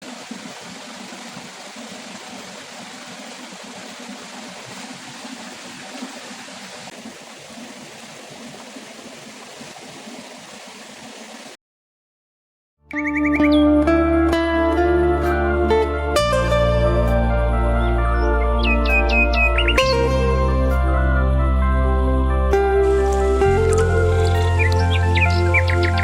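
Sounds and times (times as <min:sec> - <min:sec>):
flowing water rushing: 0:00.0 - 0:11.6, 0:22.8 - 0:26.0.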